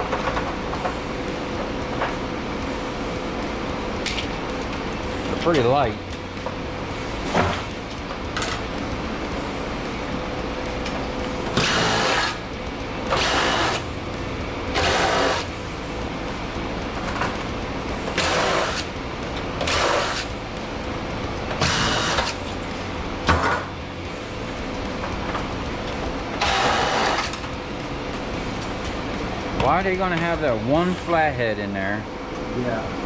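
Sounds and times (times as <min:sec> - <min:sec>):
cordless power driver running: 0:11.2 - 0:15.8, 0:26.4 - 0:27.9.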